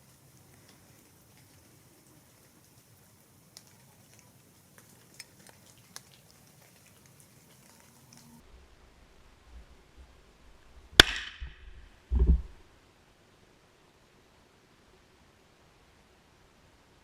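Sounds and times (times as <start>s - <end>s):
raindrops dripping: 0.0s - 8.4s.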